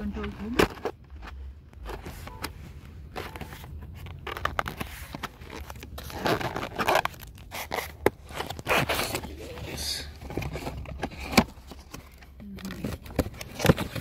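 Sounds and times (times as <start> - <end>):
packaging rustling and tearing: 3.0 - 14.0.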